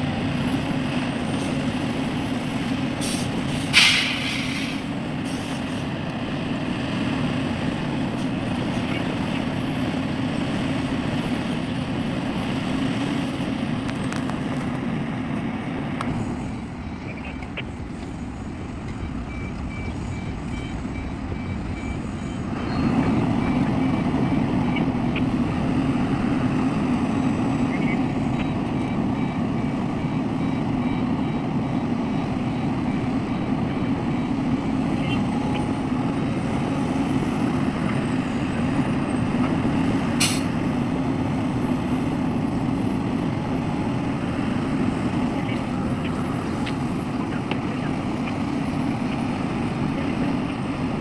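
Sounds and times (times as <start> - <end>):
large vehicle engine running: 0.0 - 51.0
sharp hiss of air: 3.0 - 5.8, 40.2 - 40.5.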